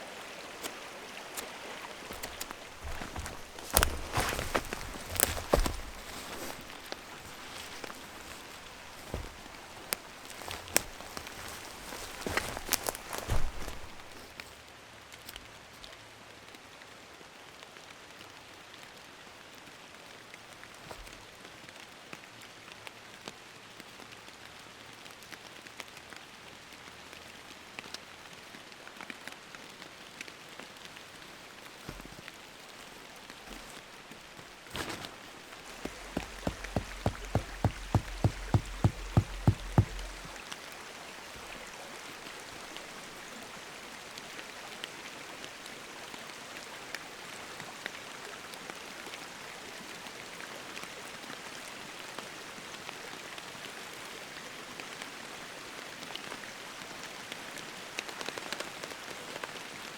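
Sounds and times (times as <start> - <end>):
steady rain falling: 0.0 - 59.9
quick run of knocks: 2.1 - 14.3, 35.7 - 40.4.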